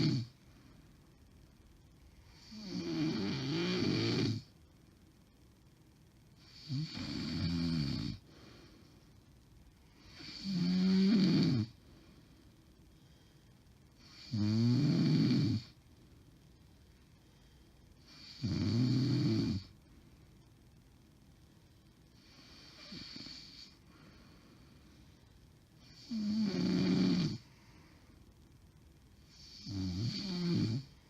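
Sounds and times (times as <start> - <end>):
woman snoring heavily: 0.0 - 0.4, 2.2 - 4.5, 6.4 - 8.2, 10.0 - 11.8, 14.0 - 15.8, 18.1 - 19.7, 22.3 - 23.8, 25.8 - 27.5, 29.3 - 31.0
quiet breathing: 0.0 - 3.5, 4.3 - 14.4, 15.2 - 31.0.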